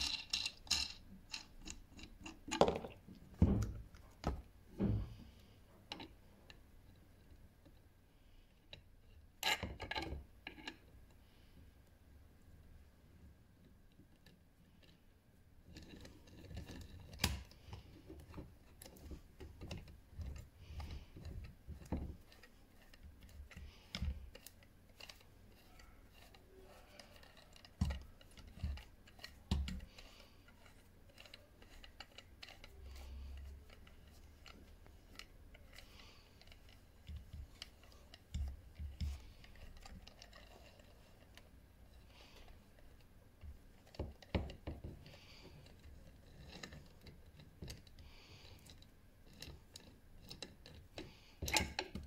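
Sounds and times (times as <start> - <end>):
metal tools clicking and scraping: 0.0 - 3.0, 15.7 - 43.0.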